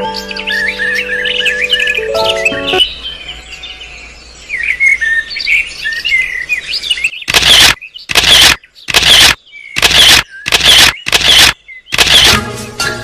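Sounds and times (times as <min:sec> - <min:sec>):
birds chirping: 0:00.0 - 0:12.4
loud burst of noise: 0:07.3 - 0:12.4.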